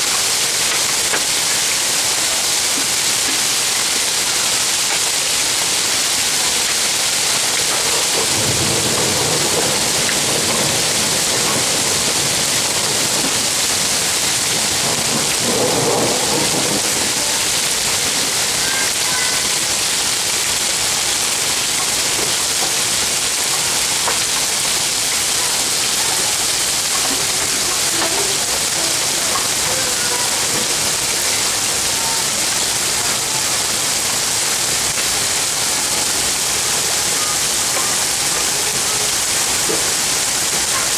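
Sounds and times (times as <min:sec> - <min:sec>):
rain hissing: 0:00.0 - 0:40.9
low rolls of thunder: 0:08.0 - 0:18.4.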